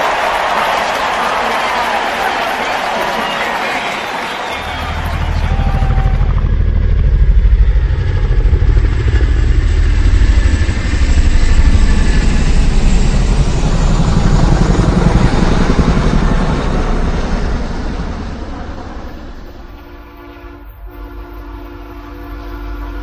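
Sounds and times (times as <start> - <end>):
low pulsing vehicle rumble: 4.9 - 21.5.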